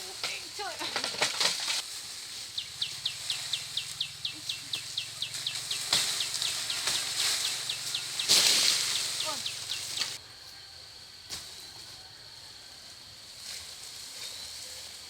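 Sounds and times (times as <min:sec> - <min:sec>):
rustling: 0:00.0 - 0:10.2
animal chirping: 0:02.6 - 0:10.2.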